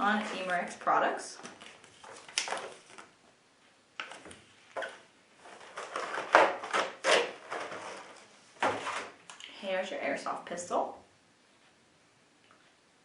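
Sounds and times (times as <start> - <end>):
paper and box rustles and knocks: 4.1 - 9.2.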